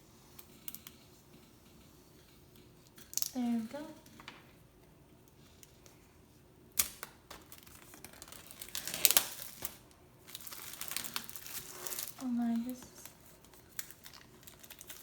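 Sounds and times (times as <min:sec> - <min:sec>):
packaging crinkling and tearing: 0:06.8 - 0:15.0.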